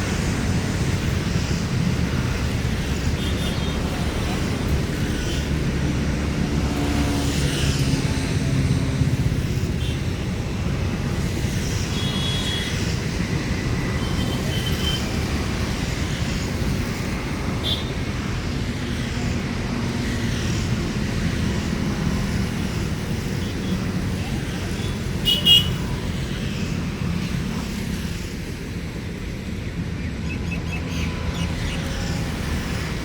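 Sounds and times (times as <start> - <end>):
road traffic rumble: 0.0 - 33.0.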